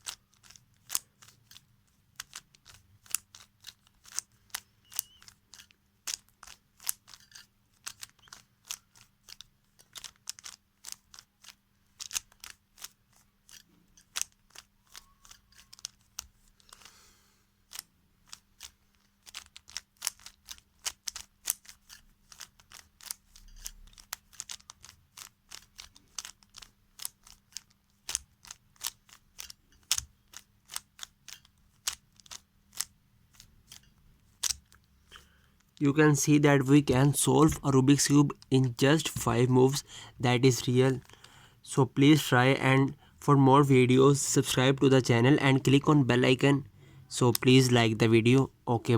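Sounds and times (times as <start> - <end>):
plastic puzzle cube clicking: 0.0 - 17.0, 17.6 - 39.8.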